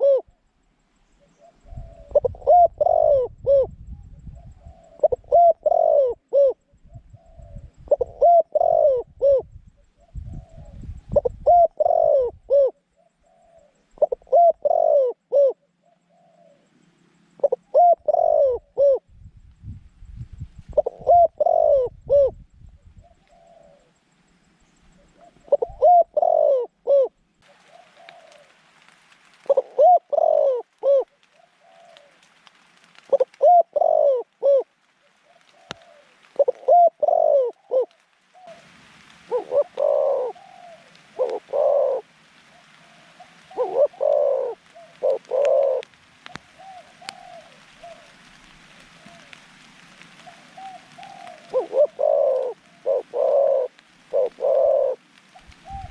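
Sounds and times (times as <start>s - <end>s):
dove cooing: 0.0s - 0.5s, 1.2s - 16.8s, 17.4s - 19.1s, 20.7s - 24.0s, 24.6s - 28.7s, 29.4s - 32.3s, 33.0s - 55.9s.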